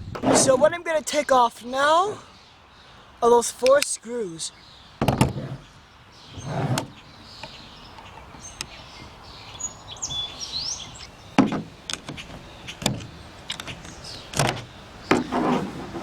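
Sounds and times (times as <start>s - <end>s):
bird chirps: 1.1s - 11.6s.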